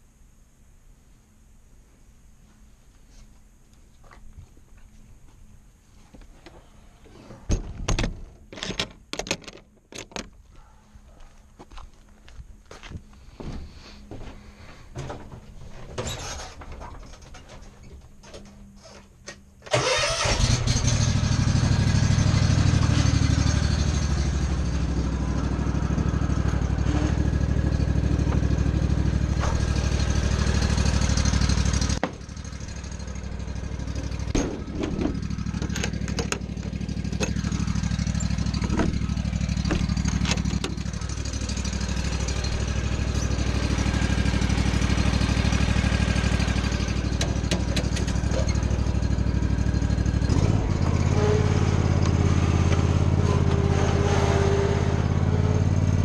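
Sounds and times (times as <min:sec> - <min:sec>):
clicks and knocks: 0:07.5 - 0:10.4
lawn mower engine running: 0:19.7 - 0:56.0.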